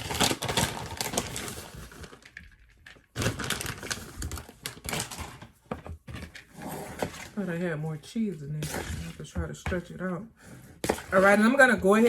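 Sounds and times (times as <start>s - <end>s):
plastic bag clicking and rustling: 0.0s - 6.5s.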